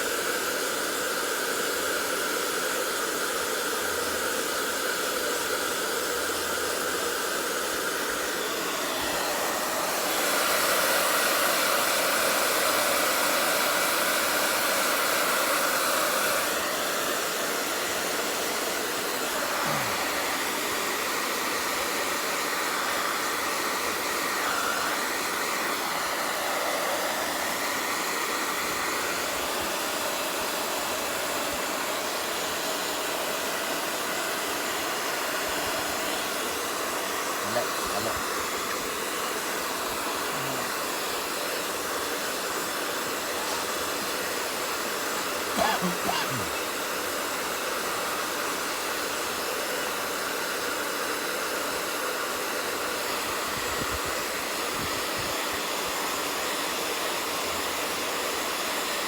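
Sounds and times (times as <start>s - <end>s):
hair dryer blowing: 0.0s - 59.0s.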